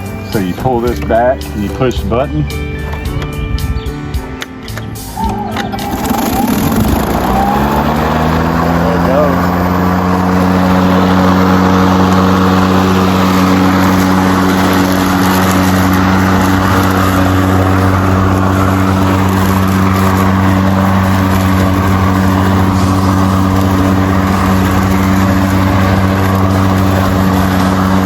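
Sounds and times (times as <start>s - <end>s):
electric lawn mower humming: 0.0s - 28.0s.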